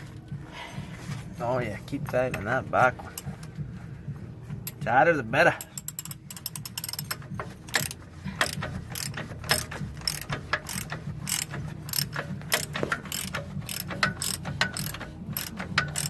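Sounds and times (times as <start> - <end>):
ratchet wrench clicking: 4.6 - 4.9, 5.5 - 16.0.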